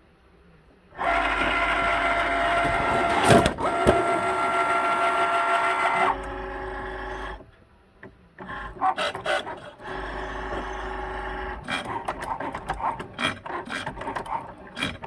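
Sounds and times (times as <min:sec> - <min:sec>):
cutting machine whirring: 0:01.0 - 0:07.4
tool holder grinding: 0:11.6 - 0:15.0.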